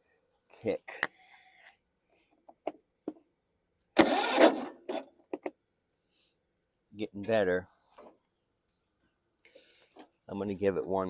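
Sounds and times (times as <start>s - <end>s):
engine cranked by starter: 4.0s - 5.1s.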